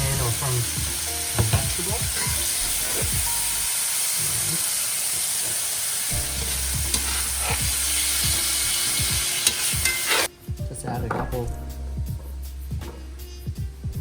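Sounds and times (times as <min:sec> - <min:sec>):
stir fry sizzling in pan: 0:00.0 - 0:10.3.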